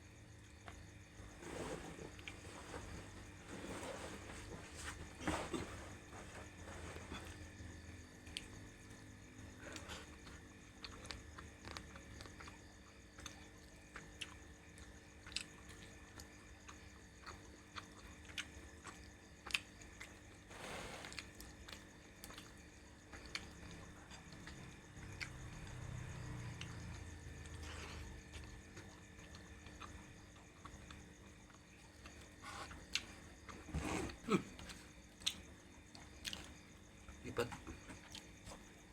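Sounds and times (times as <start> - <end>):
person chewing: 15.2 - 15.8, 16.7 - 20.2.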